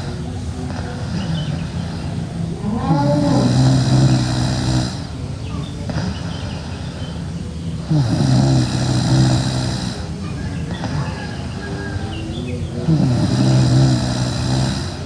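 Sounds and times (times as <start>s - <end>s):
girl snoring loudly: 0.7s - 5.2s, 7.8s - 10.2s, 12.7s - 15.0s.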